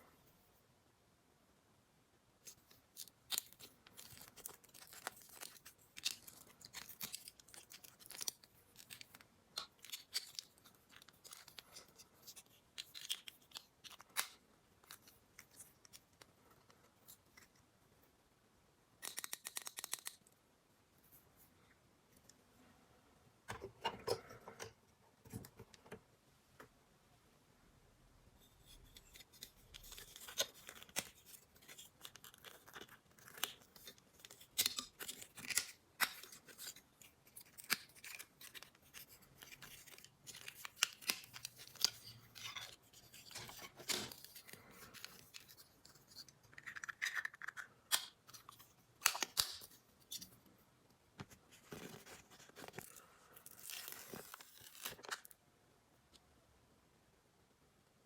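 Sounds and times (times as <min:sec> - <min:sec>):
packaging crinkling: 0:02.5 - 0:16.0, 0:29.0 - 0:50.2, 0:51.6 - 0:55.4
packaging rustling: 0:03.0 - 0:16.0
packaging tearing: 0:03.0 - 0:16.0, 0:29.1 - 0:49.8, 0:51.8 - 0:55.3
plastic pieces clicking: 0:19.0 - 0:20.2.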